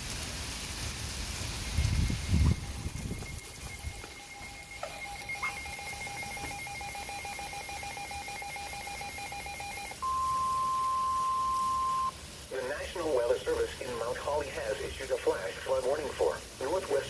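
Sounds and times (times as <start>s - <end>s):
steady warning alarm tone: 1.8s - 12.2s
pulsing two-pitch alert beep: 2.1s - 12.1s.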